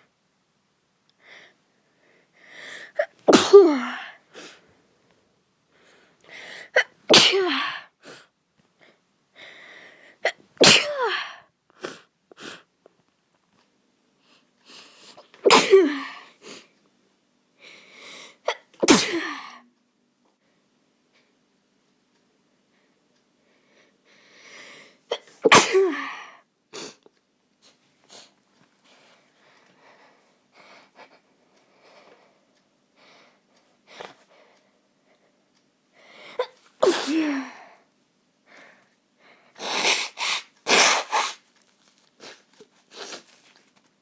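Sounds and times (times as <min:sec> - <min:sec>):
person sneezing: 0:02.9 - 0:04.6, 0:06.7 - 0:07.9, 0:10.2 - 0:12.5, 0:15.4 - 0:16.6, 0:18.5 - 0:19.6, 0:25.1 - 0:27.0, 0:36.3 - 0:37.7, 0:39.6 - 0:41.5, 0:42.2 - 0:43.4.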